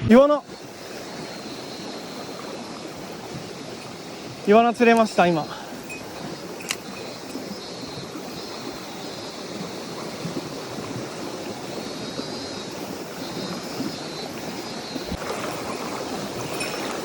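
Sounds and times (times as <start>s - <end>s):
mountain stream rushing: 0.0s - 17.0s.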